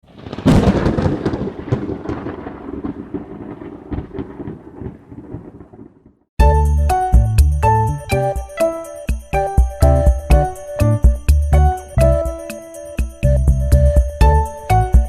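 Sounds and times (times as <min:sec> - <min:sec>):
crackling thunder-like rumble: 0:00.0 - 0:06.2
bright music with bell notes: 0:06.4 - 0:15.0.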